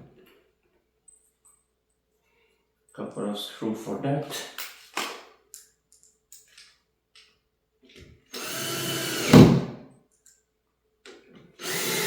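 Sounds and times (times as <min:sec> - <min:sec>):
power drill driving a screw: 0:08.3 - 0:09.7, 0:11.6 - 0:12.0.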